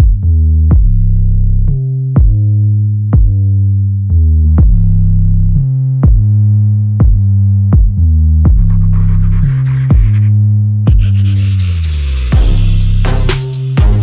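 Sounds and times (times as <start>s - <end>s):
drum machine beat: 2.1s - 2.5s, 3.1s - 3.4s, 4.6s - 5.0s, 6.0s - 6.4s, 7.0s - 10.2s, 10.8s - 11.2s, 12.3s - 14.0s
synthesizer bass line: 3.1s - 14.0s.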